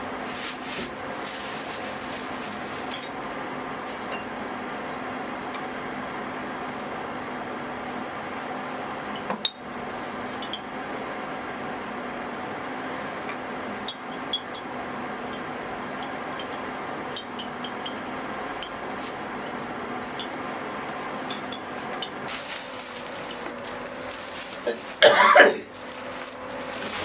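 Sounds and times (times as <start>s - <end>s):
steady hum: 0.0s - 27.0s
small clinks and pings: 4.1s - 4.4s, 13.8s - 18.0s, 20.2s - 22.2s.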